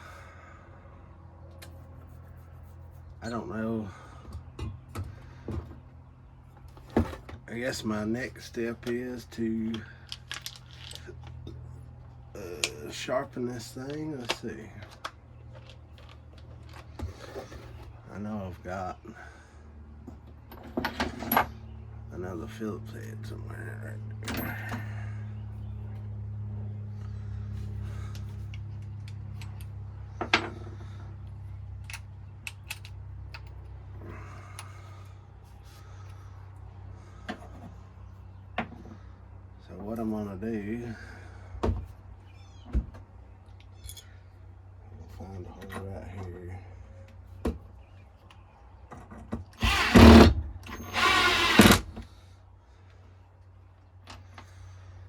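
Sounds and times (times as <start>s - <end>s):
steady low hum: 0.0s - 55.0s
power drill running: 49.6s - 52.0s.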